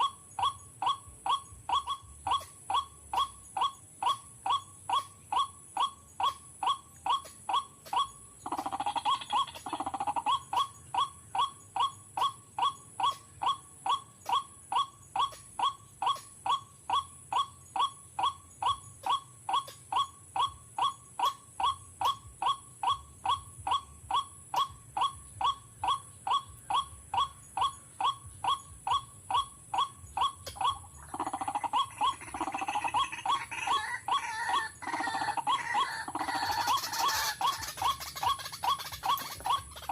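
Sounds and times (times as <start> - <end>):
rough croaking bird calls: 0.0 - 39.9.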